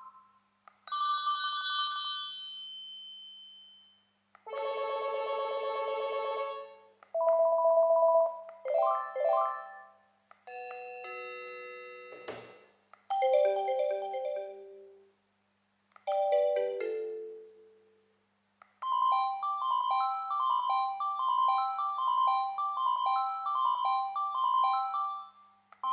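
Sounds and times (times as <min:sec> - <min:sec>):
click: 0:08.5 - 0:08.7
cordless phone ringtones: 0:10.5 - 0:14.6.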